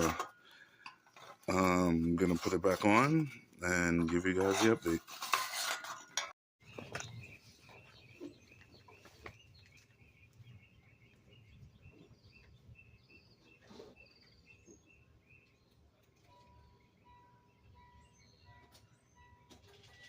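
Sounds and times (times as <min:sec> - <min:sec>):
small birds chirping: 0:06.6 - 0:20.0.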